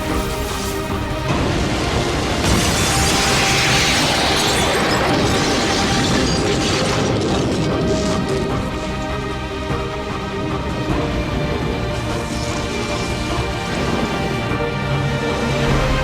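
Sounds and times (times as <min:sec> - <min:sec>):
bright hissing surge: 0:00.0 - 0:01.2
crackling and rumbling effects: 0:00.0 - 0:16.0.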